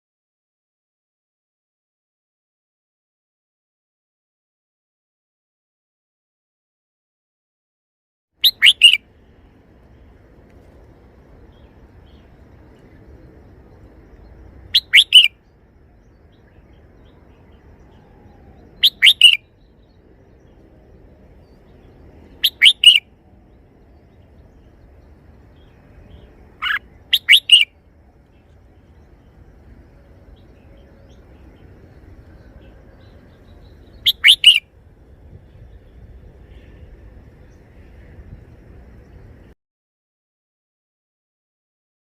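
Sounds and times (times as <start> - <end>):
bulbul singing: 8.4 - 9.1, 11.5 - 34.8.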